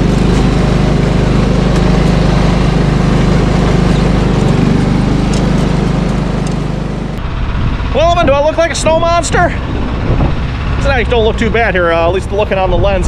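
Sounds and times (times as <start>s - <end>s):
snowblower engine running: 0.0s - 13.0s.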